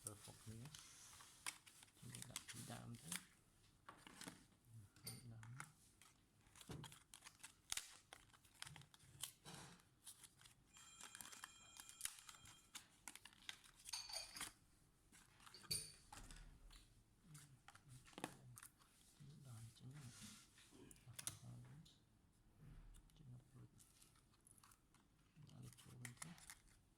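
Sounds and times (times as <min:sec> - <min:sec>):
plastic packaging crinkling: 0:00.0 - 0:03.2, 0:06.4 - 0:14.4.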